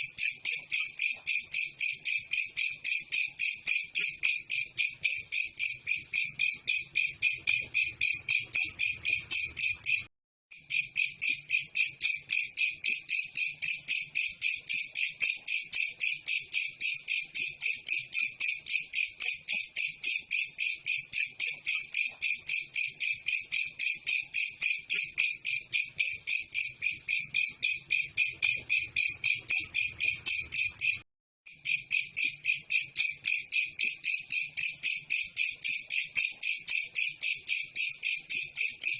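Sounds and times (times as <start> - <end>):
grasshopper chirping rapidly: 4.5 - 10.1, 24.9 - 31.0.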